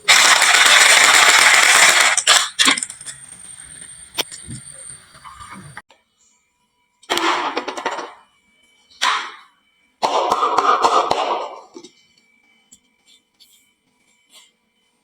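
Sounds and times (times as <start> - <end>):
marbles clattering on wooden run: 0.0 - 3.8.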